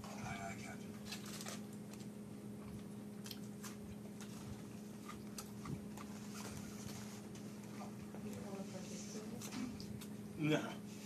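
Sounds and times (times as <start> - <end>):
steady low hum: 0.0 - 11.0
man chewing: 0.9 - 7.8.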